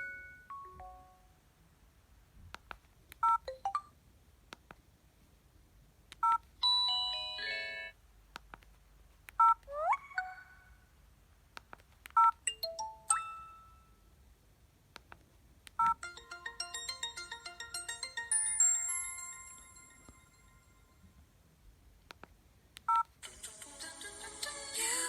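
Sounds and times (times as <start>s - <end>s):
electronic ringtone tunes: 0.0s - 1.3s, 6.6s - 7.9s, 9.8s - 10.8s, 12.2s - 14.0s, 15.8s - 21.1s
repeating ringtone melody: 6.6s - 7.9s, 9.8s - 10.7s, 16.0s - 21.0s.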